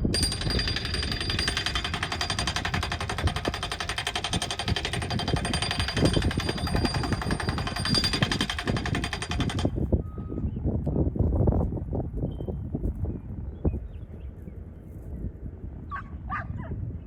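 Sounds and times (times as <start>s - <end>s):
post driver hammering: 0.0s - 9.8s.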